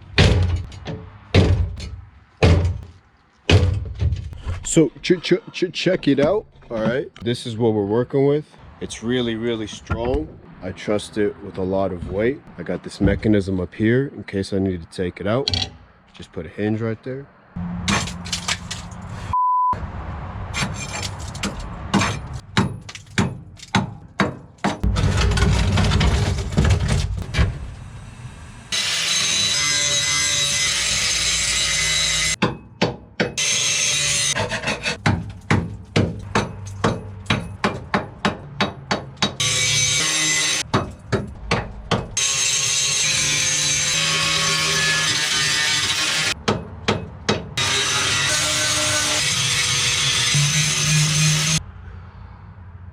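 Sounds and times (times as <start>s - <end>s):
sharp metal knocks and clicks: 0.0s - 4.4s, 15.4s - 16.2s, 20.6s - 27.5s, 35.0s - 39.4s, 40.6s - 42.2s
power tool grinding metal: 28.5s - 32.4s, 39.4s - 40.6s, 42.2s - 46.4s, 47.6s - 51.6s.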